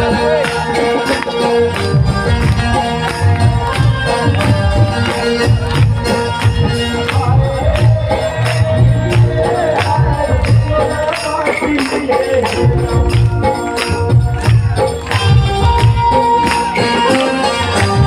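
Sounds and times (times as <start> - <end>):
steady drum beat: 0.0 - 18.0.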